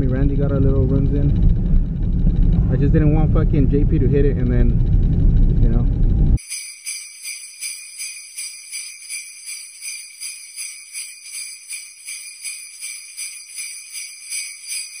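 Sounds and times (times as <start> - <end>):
jingling bells shaken: 6.4 - 15.0.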